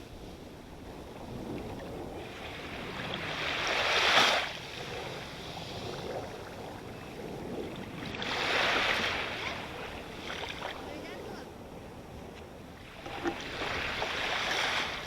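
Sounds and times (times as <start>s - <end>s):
sea waves crashing on shore: 0.0s - 15.0s.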